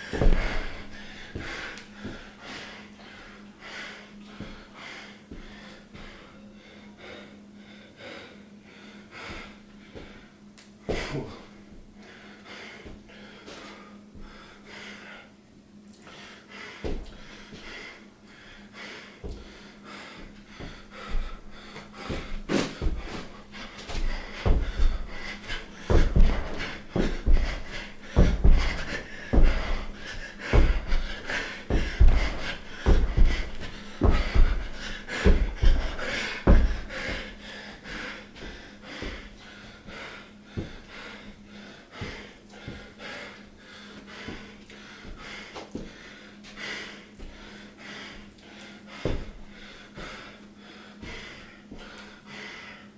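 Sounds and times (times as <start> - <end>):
heavy panting breath: 0.0 - 15.4, 16.0 - 52.9
thuds: 0.1 - 2.2, 20.6 - 37.4.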